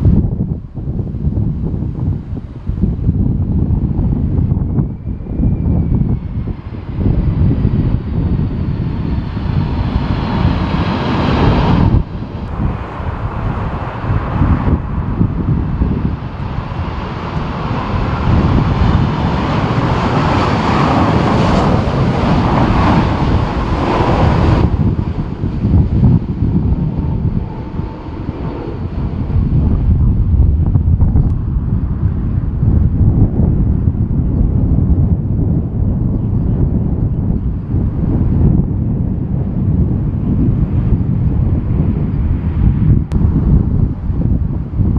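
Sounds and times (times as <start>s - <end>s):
jet airliner engines: 0.0s - 44.9s
wind buffeting microphone: 0.0s - 44.9s
faint high whine: 12.5s - 20.2s.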